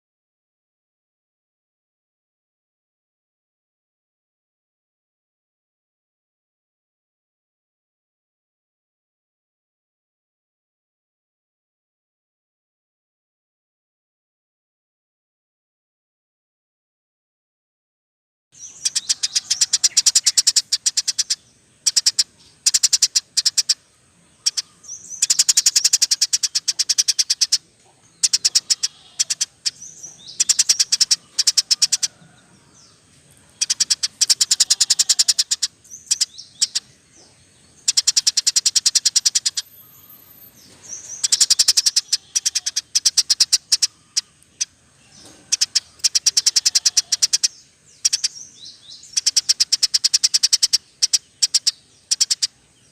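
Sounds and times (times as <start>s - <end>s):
birds chattering chirps: 18.6s - 52.9s.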